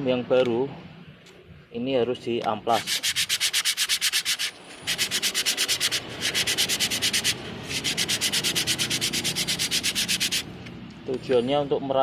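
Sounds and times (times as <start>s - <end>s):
brake pad rasping on sandpaper: 2.7s - 10.6s.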